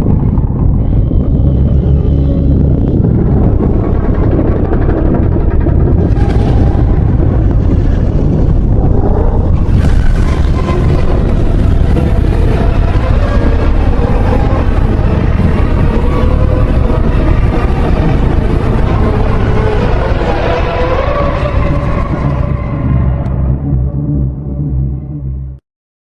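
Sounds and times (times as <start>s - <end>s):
deep rumbling monster roar: 0.0s - 25.6s.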